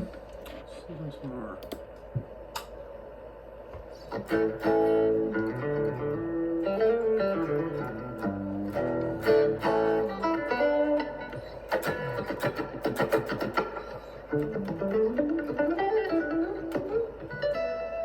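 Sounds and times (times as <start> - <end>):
guitar music: 4.0 - 18.0.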